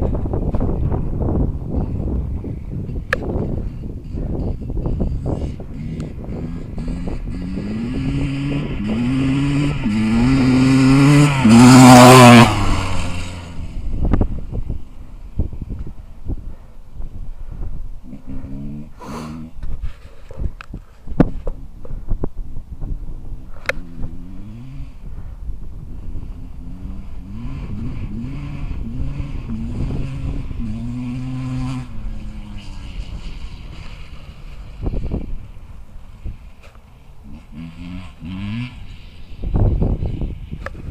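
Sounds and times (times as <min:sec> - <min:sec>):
motorbike accelerating past: 0:03.7 - 0:14.8, 0:23.7 - 0:25.1, 0:25.8 - 0:36.4, 0:37.2 - 0:40.9.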